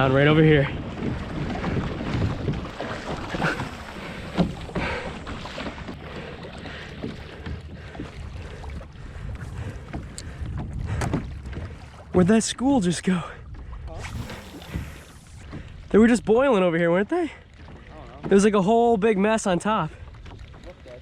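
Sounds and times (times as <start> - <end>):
wind on microphone: 0.0 - 16.6
water splashing around a kayak: 0.0 - 21.0.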